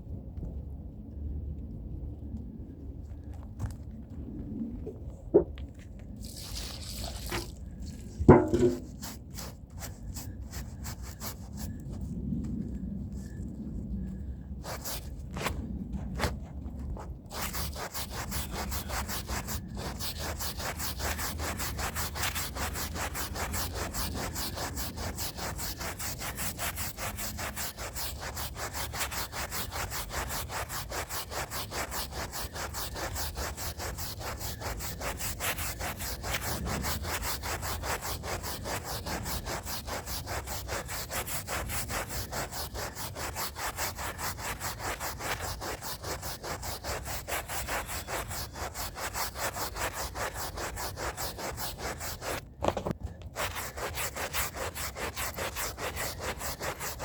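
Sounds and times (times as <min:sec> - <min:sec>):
stiff brush scrubbing rug: 0:06.2 - 0:12.2, 0:14.6 - 0:52.8, 0:53.4 - 0:57.0.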